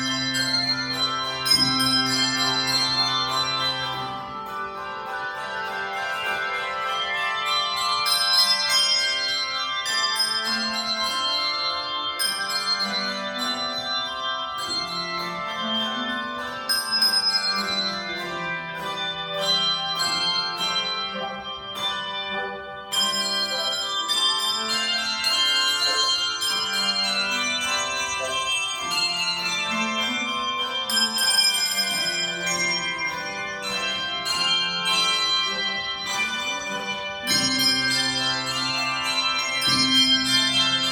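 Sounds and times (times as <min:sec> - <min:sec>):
handbells ringing a tune: 0:00.0 - 0:40.9.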